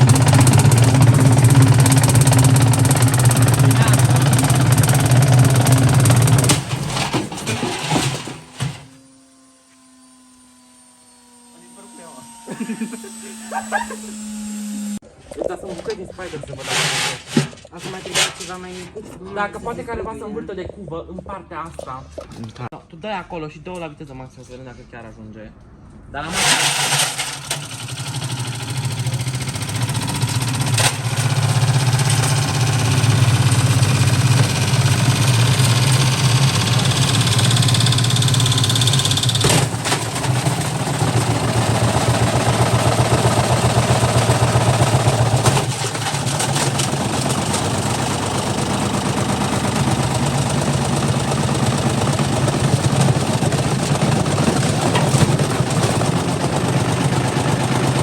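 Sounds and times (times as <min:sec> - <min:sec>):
washing machine spinning: 0:00.0 - 0:09.7, 0:26.3 - 0:58.0.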